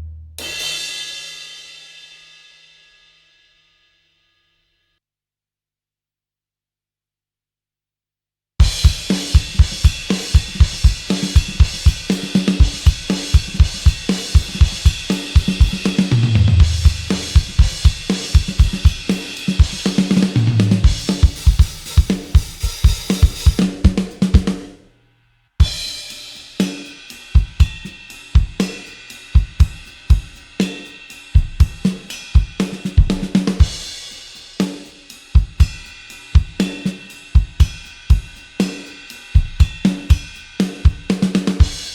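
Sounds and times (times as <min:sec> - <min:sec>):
rock drum kit beat: 0:08.6 - 0:24.8, 0:25.6 - 0:41.9
hi-hat: 0:08.8 - 0:24.5, 0:25.9 - 0:41.9.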